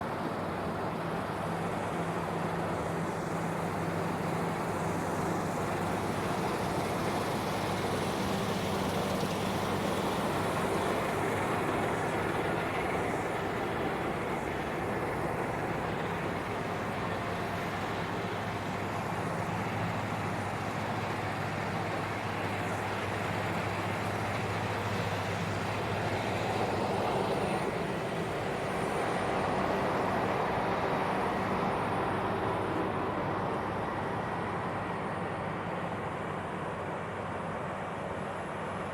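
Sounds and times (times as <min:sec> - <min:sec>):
combine harvester running: 0:00.1 - 0:38.9.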